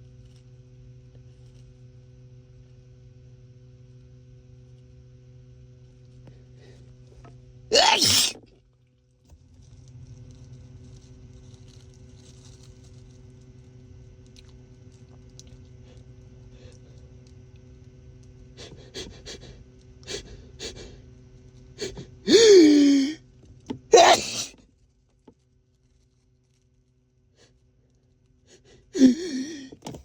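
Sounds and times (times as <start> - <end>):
man sneezing: 7.7 - 8.4, 21.8 - 23.2, 23.9 - 24.5, 29.0 - 29.7
man breathing and panting: 18.6 - 21.0, 21.8 - 23.2, 28.5 - 29.8.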